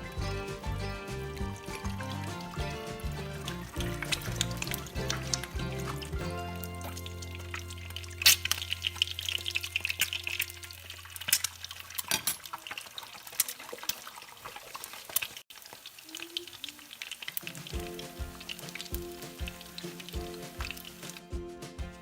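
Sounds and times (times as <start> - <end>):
background music: 0.0 - 10.9, 17.5 - 22.0.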